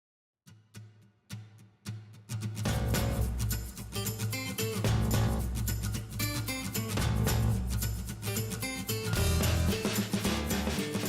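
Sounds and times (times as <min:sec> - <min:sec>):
music with steady beat: 0:02.7 - 0:11.0.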